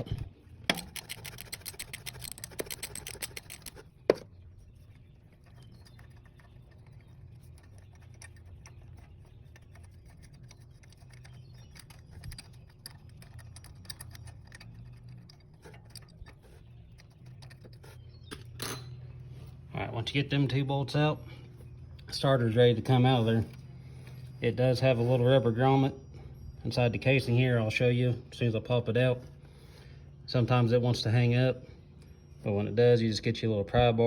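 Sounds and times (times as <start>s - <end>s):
hand ratchet clicking: 0.7s - 3.8s.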